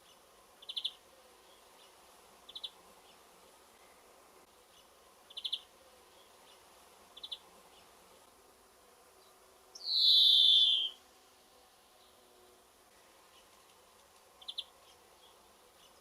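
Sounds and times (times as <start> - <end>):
finch twittering: 9.8 - 11.0.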